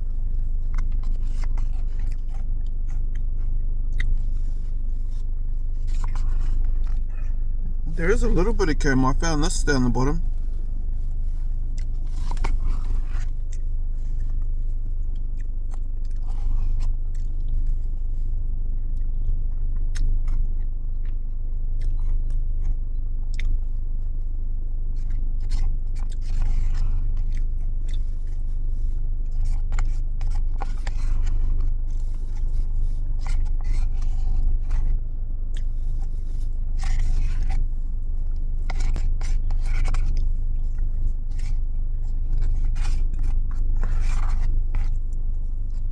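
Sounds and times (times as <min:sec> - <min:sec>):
chewing and crunching biscuit: 0:00.0 - 0:45.9
steady low hum: 0:00.0 - 0:45.9.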